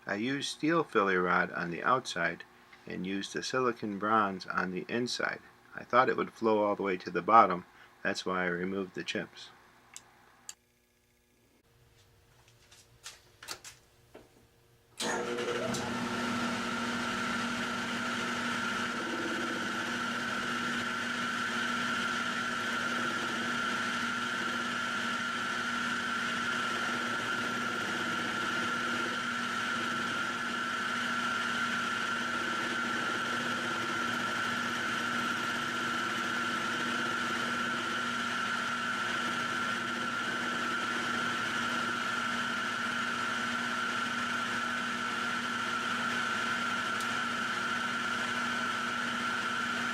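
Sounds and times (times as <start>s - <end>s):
electric motor humming and whining: 15.0s - 49.9s.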